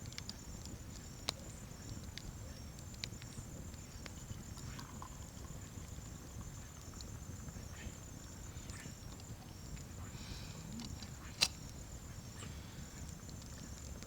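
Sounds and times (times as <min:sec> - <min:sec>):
faint pulsing insect chirr: 0:00.0 - 0:14.0
sharp click: 0:10.8 - 0:11.6.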